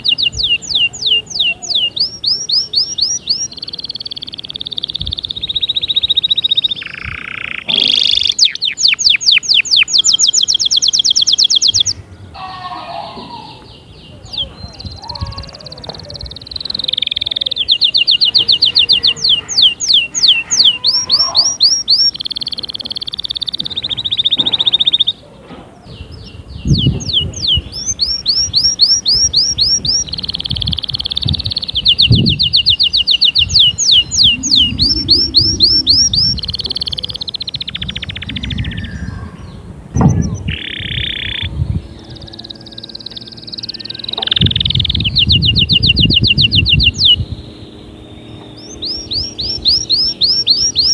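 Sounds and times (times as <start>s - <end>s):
canary singing trills: 0.0s - 50.9s
dull low thumps: 26.0s - 42.3s, 44.2s - 50.9s.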